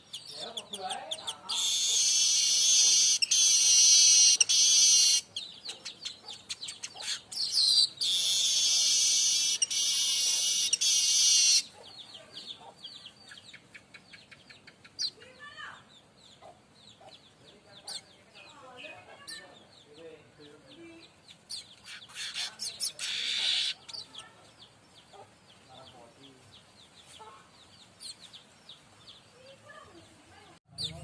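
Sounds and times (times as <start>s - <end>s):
bird buzzy wheezing song: 0.0s - 11.8s, 21.5s - 24.2s
bird chattering and ticking: 0.0s - 29.7s, 30.7s - 31.0s
bird chirps: 0.0s - 31.0s.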